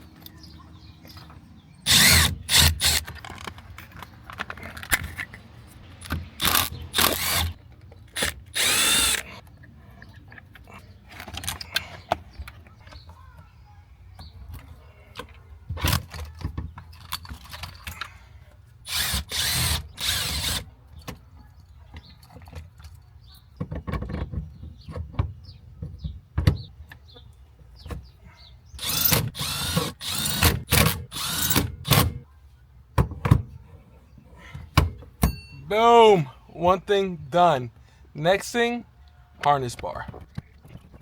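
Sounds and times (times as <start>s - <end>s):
power drill driving bolts: 1.9s - 3.1s, 6.4s - 7.6s, 8.2s - 9.3s, 18.9s - 20.7s, 28.8s - 32.2s
quiet clicks and handling noise: 3.0s - 6.2s.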